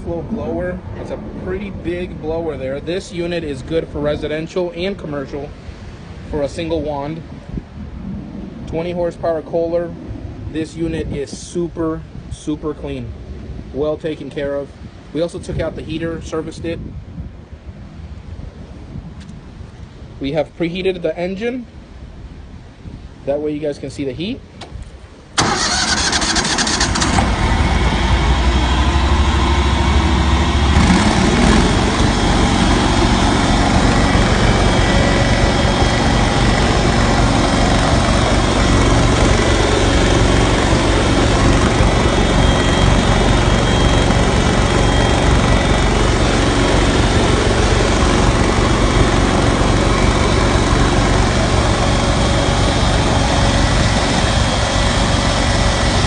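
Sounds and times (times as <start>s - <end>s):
engine and vacuum blower running: 25.4s - 56.0s.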